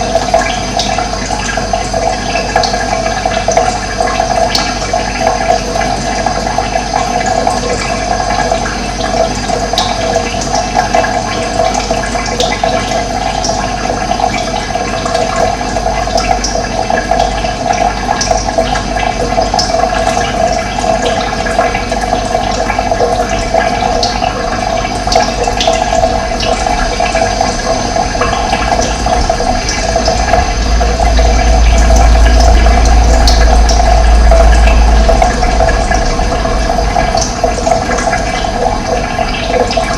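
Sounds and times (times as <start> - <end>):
running water rushing: 0.0 - 39.9
low rumble: 23.1 - 39.9.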